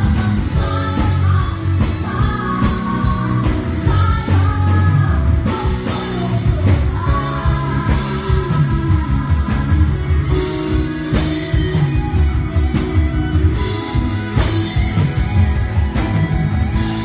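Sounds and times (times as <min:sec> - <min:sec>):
person singing: 0:00.0 - 0:11.8
live rock band playing: 0:00.0 - 0:17.0.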